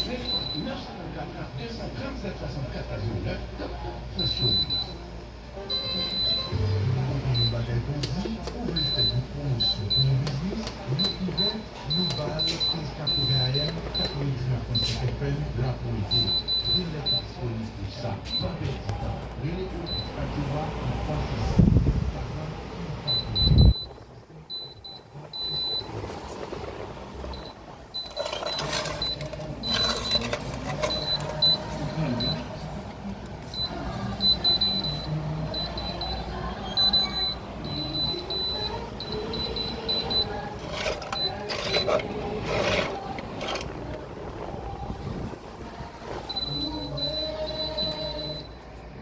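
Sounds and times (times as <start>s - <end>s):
fan running: 0.0s - 49.0s
electronic beeping: 11.0s - 15.0s, 27.3s - 43.8s, 46.2s - 48.6s.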